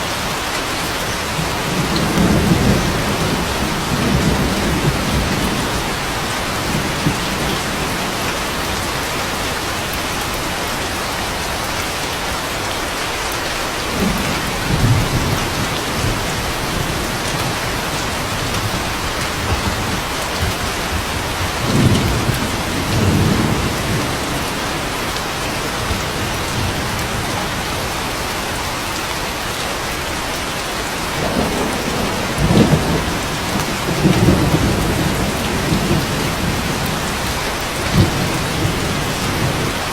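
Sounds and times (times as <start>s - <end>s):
heavy rain: 0.0s - 39.9s
thunder rolling: 1.3s - 9.4s, 13.9s - 27.9s, 31.2s - 39.9s.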